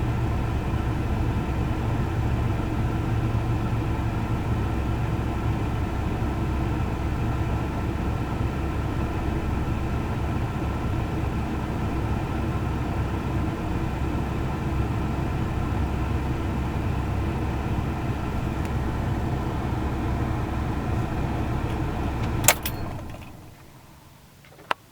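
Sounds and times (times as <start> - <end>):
sharp click: 22.2 - 23.1.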